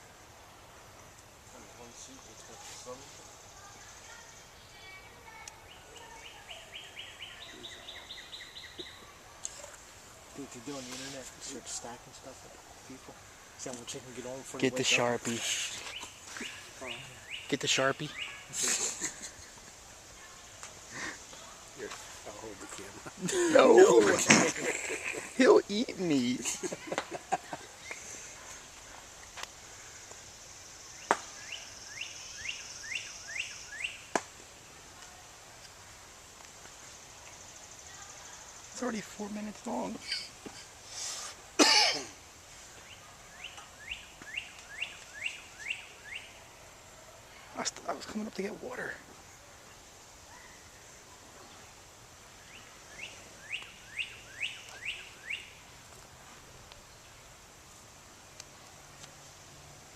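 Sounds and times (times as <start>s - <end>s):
high insect hiss: 0.0s - 59.9s
bird chirping: 1.0s - 28.7s, 29.7s - 34.8s, 42.6s - 46.6s, 47.6s - 55.8s.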